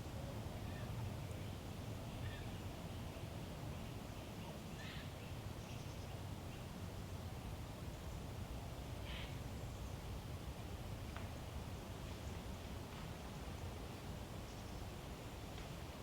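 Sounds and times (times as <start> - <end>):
faint bird calls: 9.0 - 9.4.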